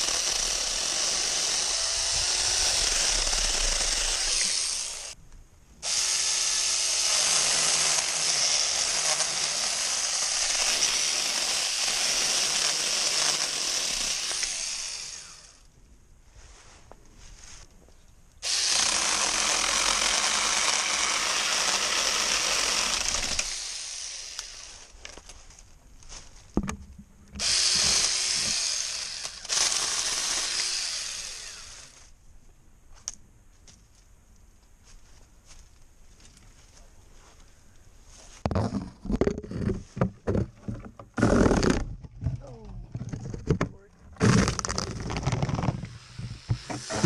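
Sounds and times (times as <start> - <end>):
mini chainsaw cutting wood: 0.0 - 5.2, 5.8 - 15.7, 18.4 - 24.9, 27.4 - 32.1, 41.2 - 41.8, 44.2 - 47.0.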